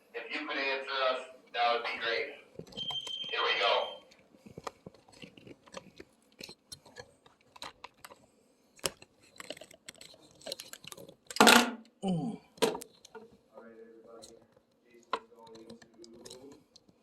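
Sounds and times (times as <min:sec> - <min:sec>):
faint clicks taps and rustles: 0:02.5 - 0:03.4, 0:04.0 - 0:11.4, 0:12.6 - 0:17.0.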